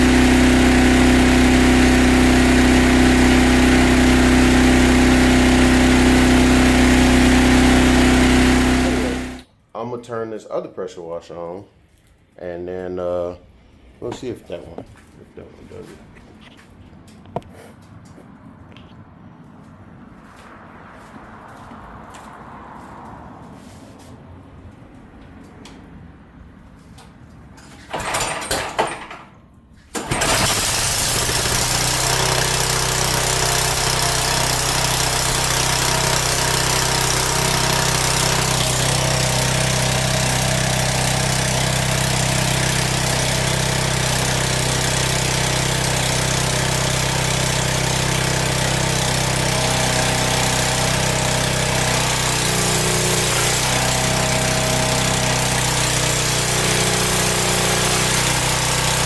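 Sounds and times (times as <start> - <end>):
pressure washer engine cranking: 0.0 - 9.4, 27.7 - 59.0
pressure washer engine running: 0.0 - 9.5, 27.9 - 29.1, 30.0 - 59.0.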